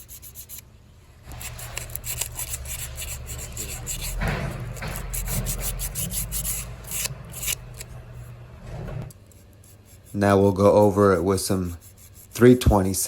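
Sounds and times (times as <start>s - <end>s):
sandpaper rubbing on wood: 0.0s - 0.6s, 1.3s - 7.6s, 9.4s - 12.7s.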